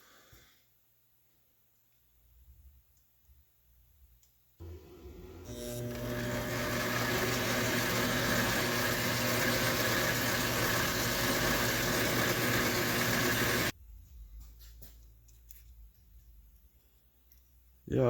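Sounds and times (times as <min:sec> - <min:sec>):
lathe motor humming: 0:04.6 - 0:13.7.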